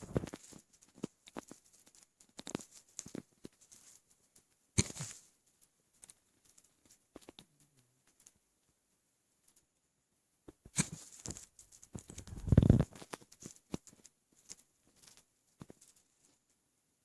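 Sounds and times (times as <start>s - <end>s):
stomach rumbling: 0.0s - 1.6s, 11.9s - 14.0s
small clicks and rubbing: 0.0s - 8.8s, 9.4s - 9.8s, 10.5s - 16.6s.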